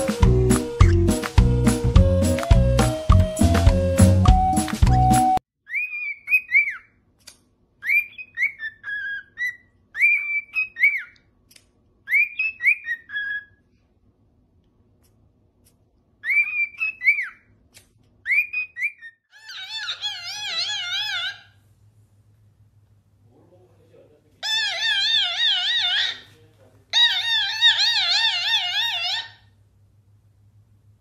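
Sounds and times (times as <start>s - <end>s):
parrot whistling: 0.0s - 7.0s, 7.8s - 11.2s, 12.1s - 13.6s, 16.2s - 17.5s, 18.3s - 21.6s, 24.4s - 26.3s, 27.0s - 29.5s.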